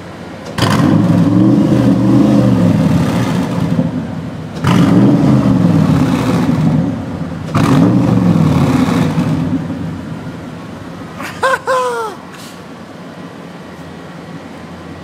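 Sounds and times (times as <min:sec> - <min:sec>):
engine revving: 0:00.5 - 0:10.1.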